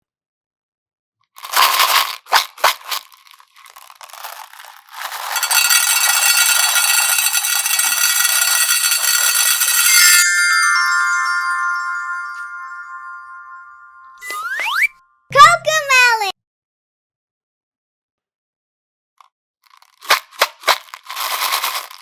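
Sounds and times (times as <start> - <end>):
slime crunching and crackling: 1.5 - 5.4
ringing chime-like tones: 5.4 - 15.1
shimmering music-like sound: 10.2 - 14.4.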